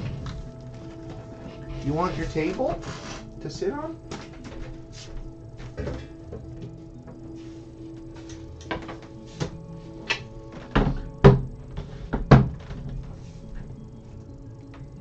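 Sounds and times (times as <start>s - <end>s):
knocks and thuds on furniture: 10.2s - 13.2s.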